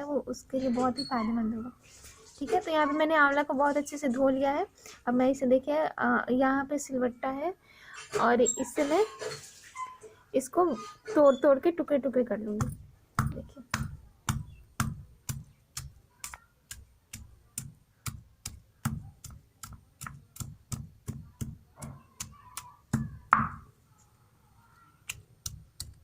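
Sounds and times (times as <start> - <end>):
stone pounding fruit: 12.5 - 23.7, 25.1 - 26.0.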